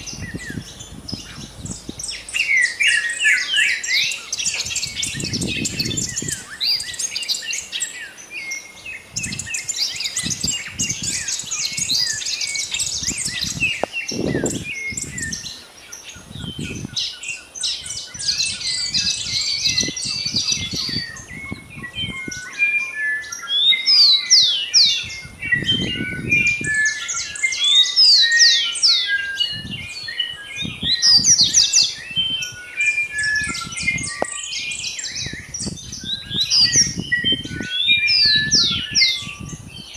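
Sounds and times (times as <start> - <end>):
low muffled rumbles: 0.0 - 2.4
many small birds chirping: 0.0 - 39.9.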